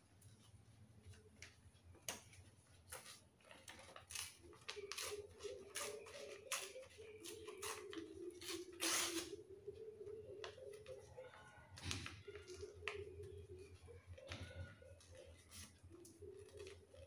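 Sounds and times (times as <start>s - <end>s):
paper rustling and crinkling: 0.2s - 9.4s, 11.7s - 17.0s
paper tearing: 3.9s - 6.8s, 7.6s - 9.3s.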